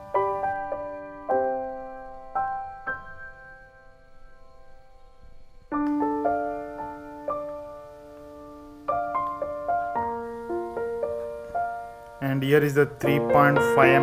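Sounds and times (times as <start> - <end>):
slow solo piano music: 0.0 - 14.0.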